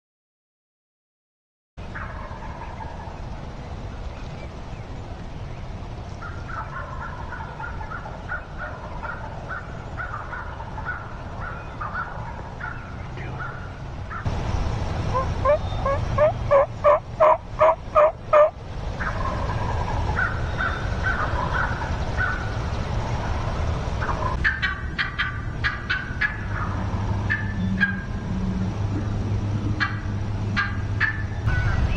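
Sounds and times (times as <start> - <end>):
wild turkeys calling: 1.9 - 3.3, 4.0 - 28.3, 29.7 - 31.9.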